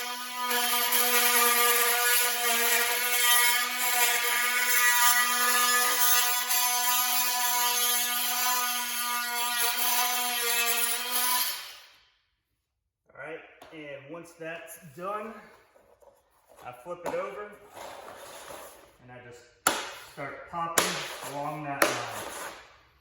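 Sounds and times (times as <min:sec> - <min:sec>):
oscillating multi-tool buzzing: 0:00.0 - 0:11.9.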